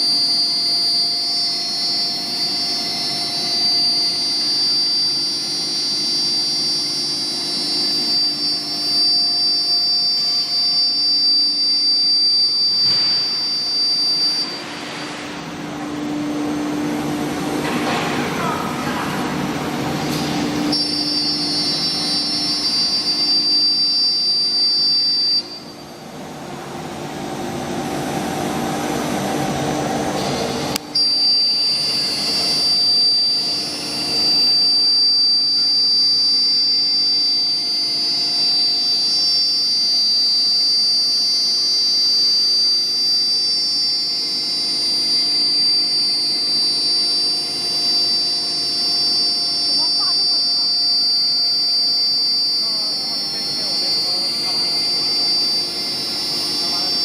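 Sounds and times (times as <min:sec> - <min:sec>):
low machine noise: 0:00.0 - 0:36.5
router spindle high-pitched whine: 0:00.0 - 0:57.0.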